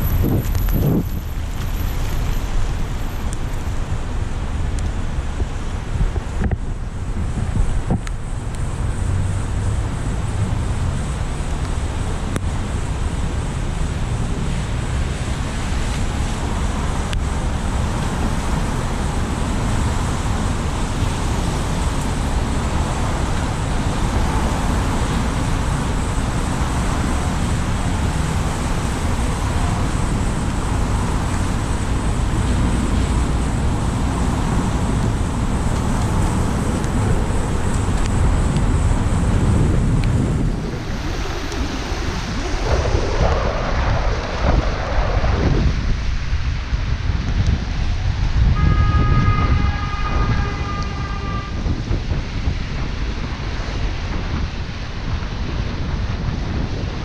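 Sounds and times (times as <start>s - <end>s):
tyre noise on wet road: 0.0s - 57.0s
wind on microphone: 0.0s - 57.0s.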